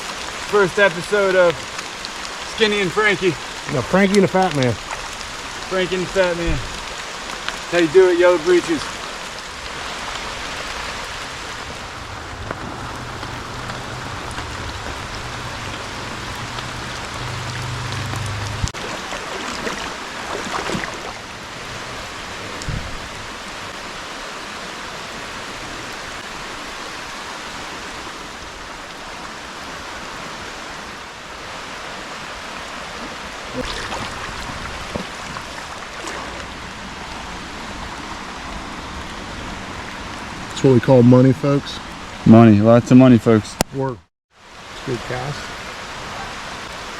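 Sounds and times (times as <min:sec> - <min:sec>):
rain falling on a creek: 0:00.0 - 0:46.9
running water: 0:00.0 - 0:46.9
low rumble: 0:11.2 - 0:24.0.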